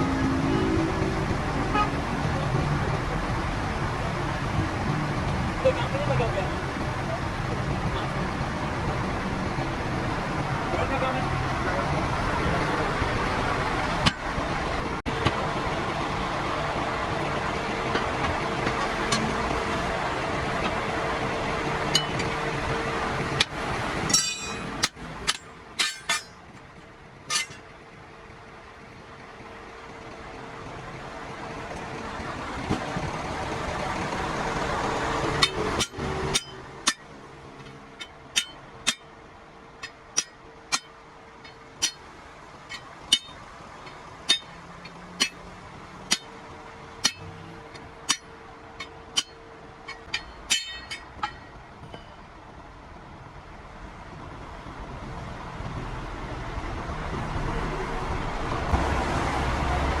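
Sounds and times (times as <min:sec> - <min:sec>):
highway traffic: 0:00.0 - 1:00.0.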